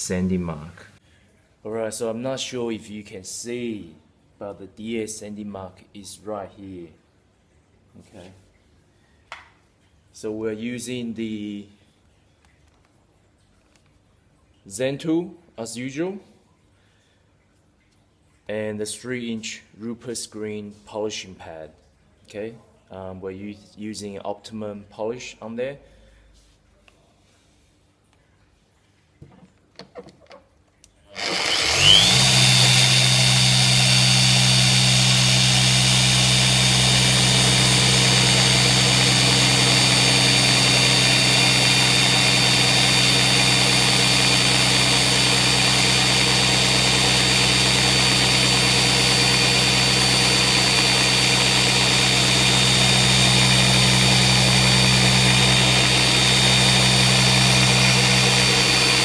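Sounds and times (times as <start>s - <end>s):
mini polisher spinning: 31.2s - 59.0s.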